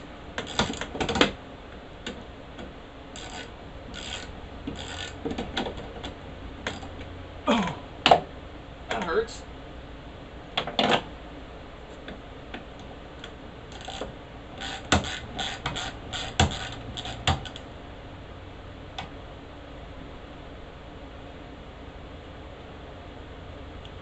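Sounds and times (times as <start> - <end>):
hardware clicking and rattling: 0.4 - 1.4, 13.7 - 17.6.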